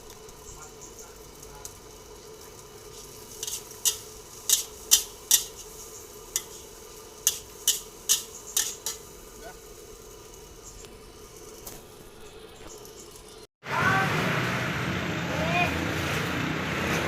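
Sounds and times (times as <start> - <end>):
metal spatula scraping a wok: 2.9 - 9.1.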